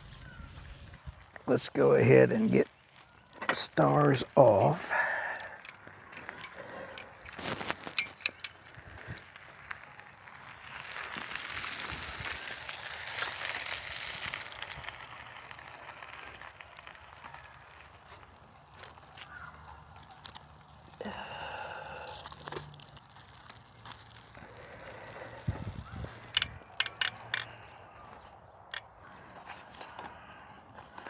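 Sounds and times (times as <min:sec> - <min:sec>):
campfire crackling: 0:00.0 - 0:31.0
sharp clicks and knocks: 0:26.3 - 0:27.5.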